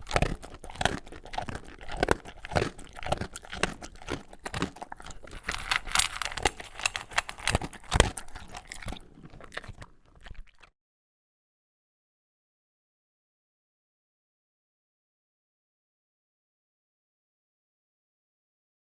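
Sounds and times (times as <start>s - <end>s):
dog chewing dry kibble: 0.0s - 10.7s.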